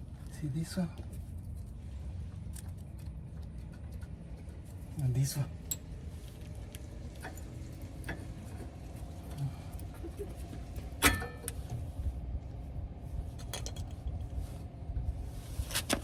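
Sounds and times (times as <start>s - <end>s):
steady low rumble: 0.0s - 15.7s.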